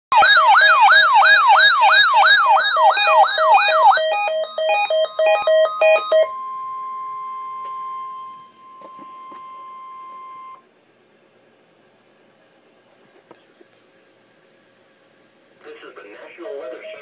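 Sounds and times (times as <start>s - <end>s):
electronic siren sweeping: 0.1s - 10.6s
steady alarm tone: 0.1s - 10.6s
pulsed electronic beeps: 2.3s - 10.6s.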